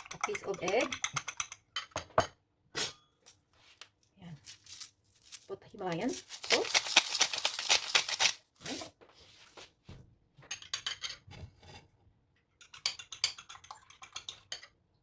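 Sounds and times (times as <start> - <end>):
salt grinder crunching clicks: 6.2 - 8.4.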